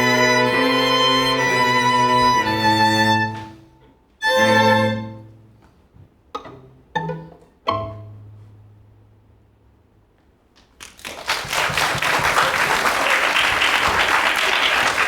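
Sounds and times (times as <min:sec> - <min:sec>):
string ensemble playing: 0:00.0 - 0:09.2.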